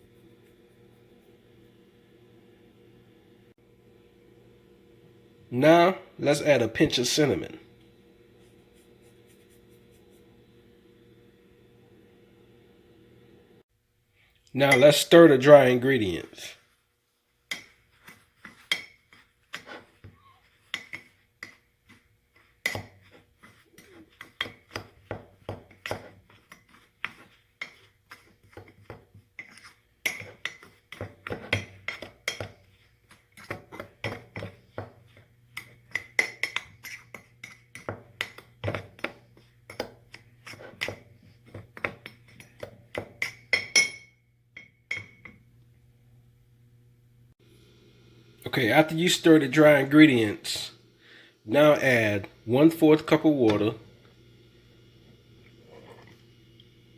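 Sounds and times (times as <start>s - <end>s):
utensil clinking in a mug: 41.8s - 45.4s.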